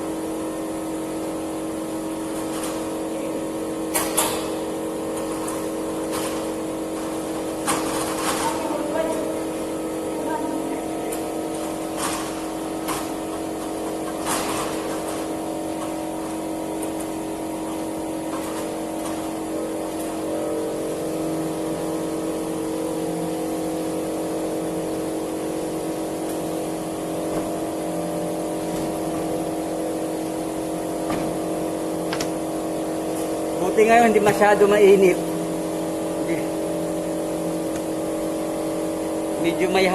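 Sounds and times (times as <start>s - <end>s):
motor humming: 0.0s - 39.9s
sharp clicks and knocks: 32.1s - 32.4s.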